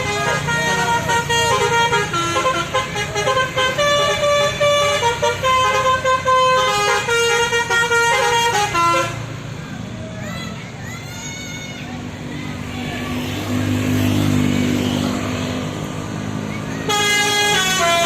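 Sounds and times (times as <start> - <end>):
multi-tone bus horn melody: 0.0 - 9.6, 16.6 - 18.0.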